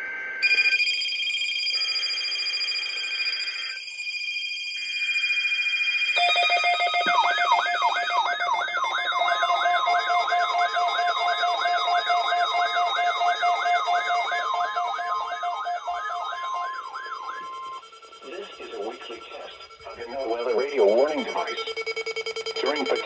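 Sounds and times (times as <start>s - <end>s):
warbling siren: 0.4s - 23.0s
weather alert radio tones: 6.2s - 23.0s.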